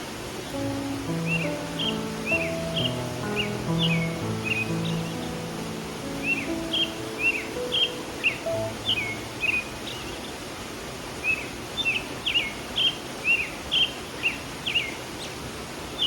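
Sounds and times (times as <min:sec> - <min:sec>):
flowing stream: 0:00.0 - 0:16.0
songbird chirping: 0:00.5 - 0:10.4.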